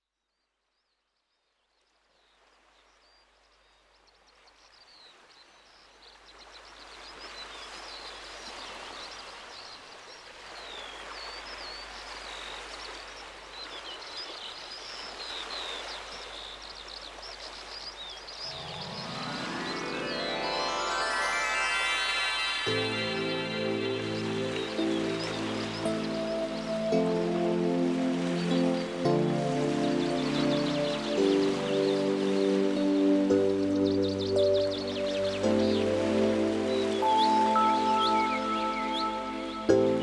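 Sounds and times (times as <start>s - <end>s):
birds chirping: 5.8s - 40.0s
mallet instrument music: 18.6s - 27.6s, 34.4s - 40.0s.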